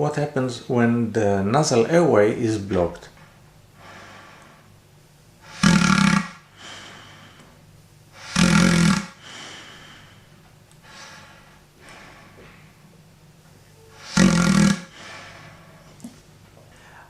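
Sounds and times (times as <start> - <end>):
soft airy breaths: 3.6 - 17.0
loud snores: 5.4 - 6.5, 8.2 - 9.5, 13.9 - 15.7.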